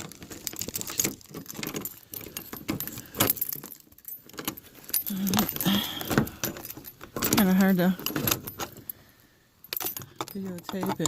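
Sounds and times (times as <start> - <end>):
lock being worked open: 0.0 - 8.9, 9.7 - 11.0
keys jangling: 0.0 - 9.0, 9.6 - 11.0.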